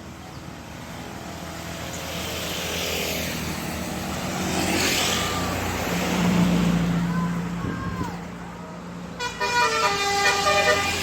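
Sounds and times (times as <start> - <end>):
vehicle passing by: 0.0 - 11.0.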